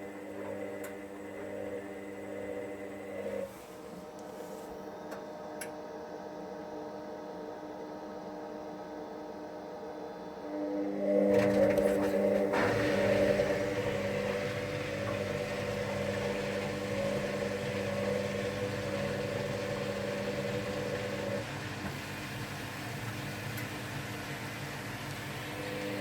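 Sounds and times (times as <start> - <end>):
motor hum: 0.0 - 4.5, 10.4 - 26.0.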